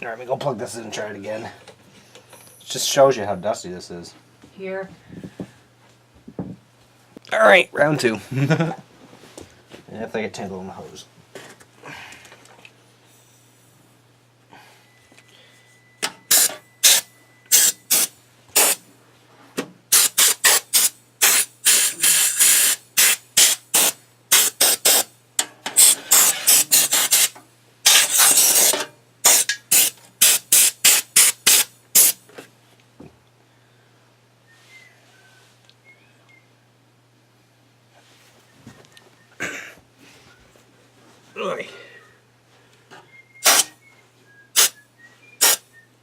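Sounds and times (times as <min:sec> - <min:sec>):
compressed air blasts hissing: 0:16.3 - 0:18.8, 0:19.9 - 0:25.1, 0:25.8 - 0:32.2, 0:43.4 - 0:43.8, 0:44.5 - 0:44.8, 0:45.4 - 0:45.6.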